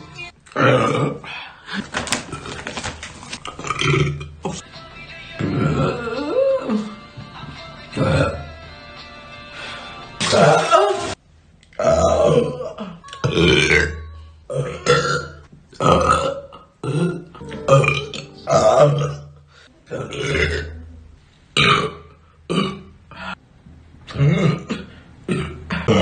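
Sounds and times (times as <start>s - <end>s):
person burping: 0.5s - 1.3s, 3.5s - 4.6s, 5.4s - 6.9s, 8.0s - 8.4s, 10.2s - 11.2s, 11.8s - 21.0s, 21.6s - 23.3s, 24.1s - 26.0s.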